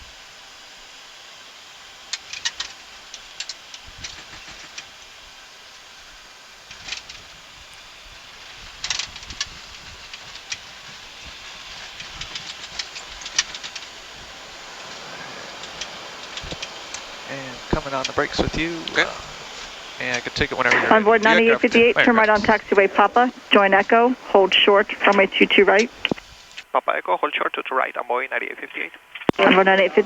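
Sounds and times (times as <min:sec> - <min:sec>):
airflow and engine rush: 0:00.1 - 0:30.0
wheels knocking and rattling on runway: 0:02.0 - 0:05.4, 0:06.6 - 0:20.7.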